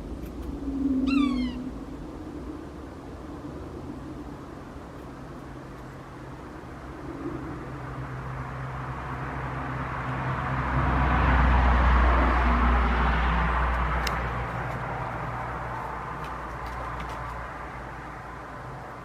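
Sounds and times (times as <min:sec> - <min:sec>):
bird calling: 0:00.8 - 0:01.8
vehicle passing by: 0:06.8 - 0:19.0.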